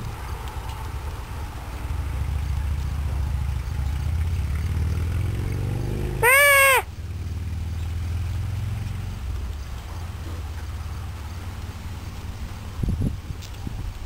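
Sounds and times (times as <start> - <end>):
steady low rumble: 0.0 - 4.5
goat bleating: 6.2 - 6.9.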